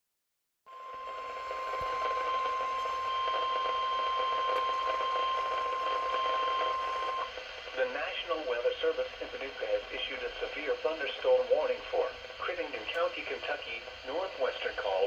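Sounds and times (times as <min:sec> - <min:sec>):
steady alarm tone: 0:00.7 - 0:07.3
faint radio hiss: 0:00.8 - 0:15.0.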